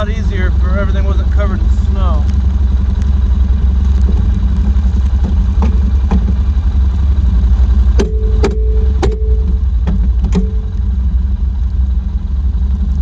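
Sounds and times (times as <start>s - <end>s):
steady mid-pitched tone: 0.0s - 11.2s
four-wheeler engine running: 0.0s - 13.0s
sharp clicks and knocks: 2.2s - 6.5s, 8.0s - 11.0s.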